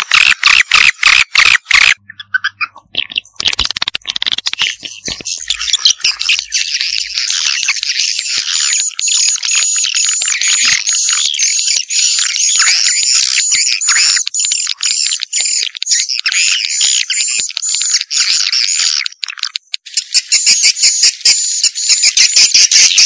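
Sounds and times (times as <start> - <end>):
swiftlets chirping and twittering: 0.0 - 23.0.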